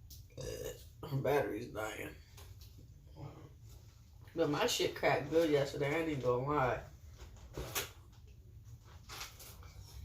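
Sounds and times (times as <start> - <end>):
handling and eating noises: 7.0 - 10.0.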